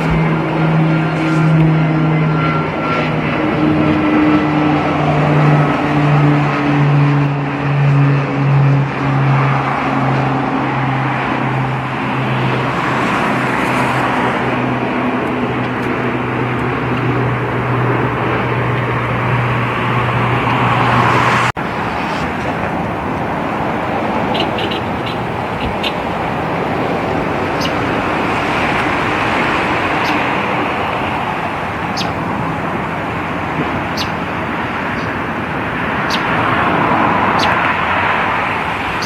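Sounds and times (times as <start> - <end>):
jet engines droning: 0.0 - 39.0.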